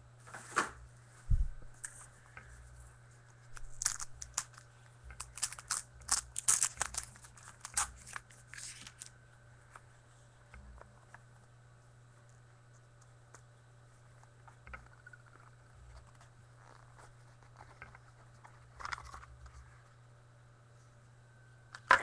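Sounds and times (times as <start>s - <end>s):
wrapper crinkling and tearing: 3.5s - 9.1s.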